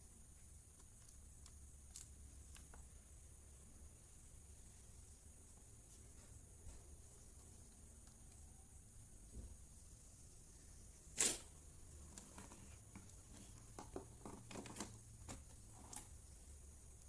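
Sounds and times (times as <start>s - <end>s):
small parts clicking and tapping: 0.4s - 2.9s, 12.2s - 16.2s
rustling noise: 11.2s - 16.4s.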